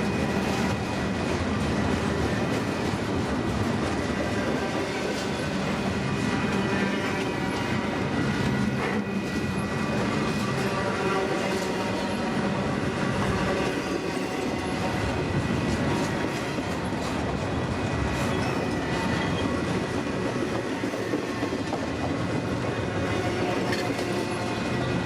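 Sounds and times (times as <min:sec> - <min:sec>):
train wheels rumbling on rail: 0:00.0 - 0:25.0
wheels clacking over rail joints: 0:13.6 - 0:25.0.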